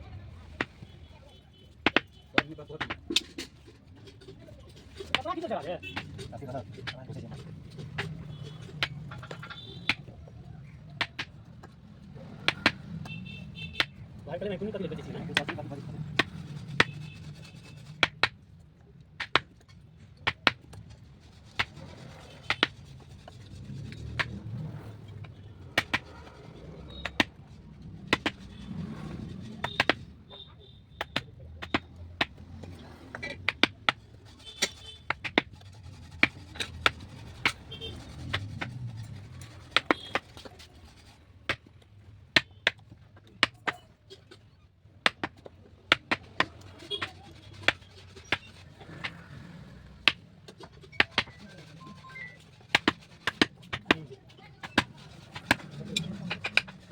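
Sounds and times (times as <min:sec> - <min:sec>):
soft rubbing and scraping: 0:00.1 - 0:56.9
hand tools tapping on wood: 0:01.8 - 0:03.7, 0:04.7 - 0:10.1, 0:11.0 - 0:13.2, 0:15.2 - 0:17.1, 0:18.0 - 0:18.4, 0:19.0 - 0:20.9, 0:25.2 - 0:26.3, 0:26.9 - 0:28.6, 0:29.6 - 0:30.2, 0:31.0 - 0:49.2, 0:49.9 - 0:56.9.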